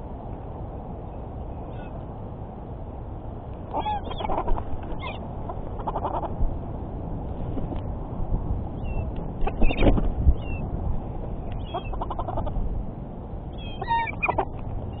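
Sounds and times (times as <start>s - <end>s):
low background rumble: 0.0s - 15.0s
birds calling: 3.7s - 6.4s, 8.8s - 10.7s, 11.4s - 12.6s, 13.5s - 15.0s.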